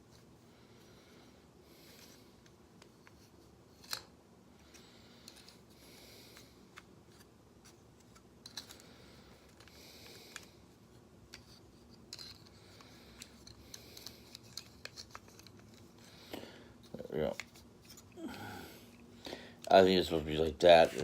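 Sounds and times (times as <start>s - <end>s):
plastic toy parts clicking: 3.8s - 4.1s, 7.6s - 8.8s, 11.3s - 16.1s.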